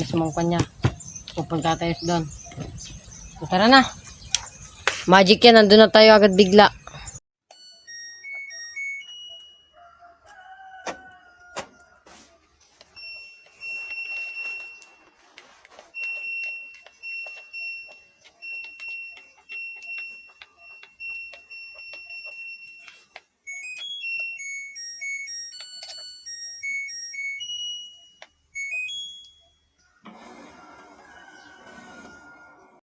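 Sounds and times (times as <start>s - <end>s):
short electronic beeps: 28.6s - 29.3s.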